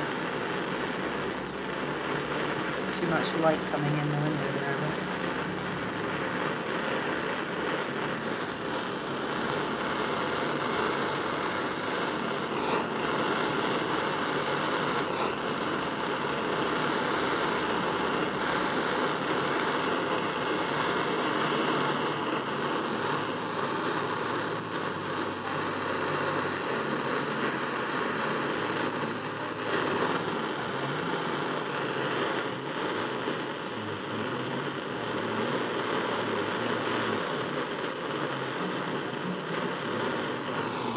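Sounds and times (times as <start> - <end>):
torch flame roaring: 0.0 - 40.9.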